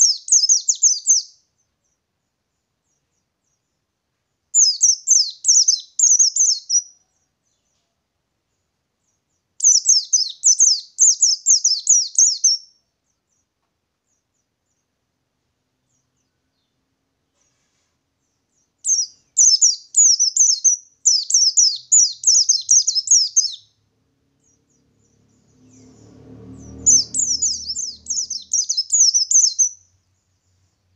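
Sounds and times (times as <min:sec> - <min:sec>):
bird chattering song: 0:00.0 - 0:03.8, 0:04.5 - 0:07.8, 0:09.0 - 0:13.5, 0:18.2 - 0:23.8, 0:24.4 - 0:30.9.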